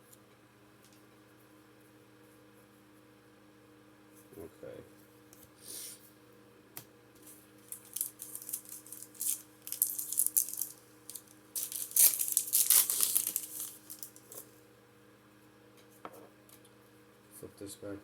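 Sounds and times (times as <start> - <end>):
foil wrapper tearing and crinkling: 7.6 - 14.5.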